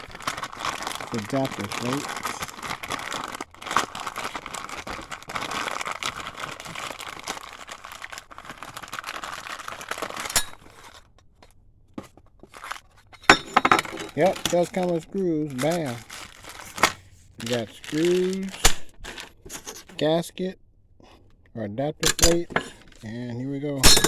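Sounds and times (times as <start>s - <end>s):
packaging crinkled and torn: 0.0s - 11.2s, 12.2s - 13.1s, 13.8s - 19.4s.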